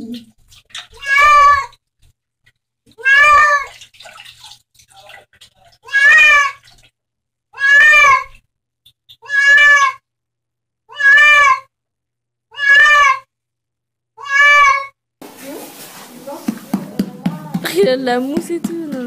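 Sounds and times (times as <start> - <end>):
cat meowing: 1.0 - 1.8, 2.9 - 3.7, 5.8 - 6.6, 7.6 - 8.4, 9.2 - 10.0, 10.9 - 11.7, 12.5 - 13.3, 14.2 - 14.9.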